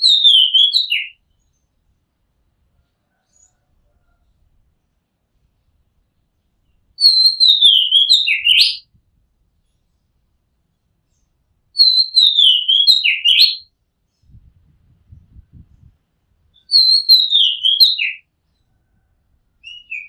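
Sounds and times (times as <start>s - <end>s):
bird singing whistled phrases: 0.0s - 1.2s, 7.0s - 8.8s, 11.8s - 13.6s, 16.6s - 18.2s, 19.6s - 20.0s.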